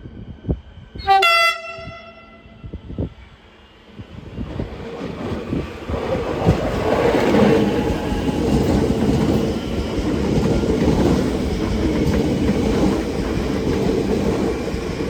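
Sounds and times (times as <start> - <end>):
train running with wheel clatter: 0.0 - 15.0
electric train horn blast: 1.0 - 2.8.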